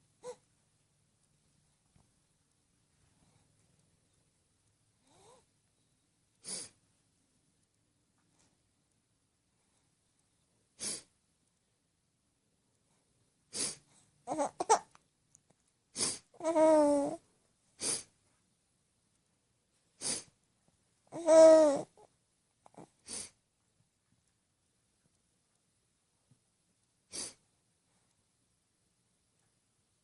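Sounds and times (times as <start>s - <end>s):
woman sniffling: 13.5s - 13.8s, 17.8s - 18.1s, 20.0s - 20.3s, 23.0s - 23.4s, 27.1s - 27.4s
baby laughing and cooing: 14.3s - 15.0s, 16.4s - 17.2s, 21.1s - 22.0s.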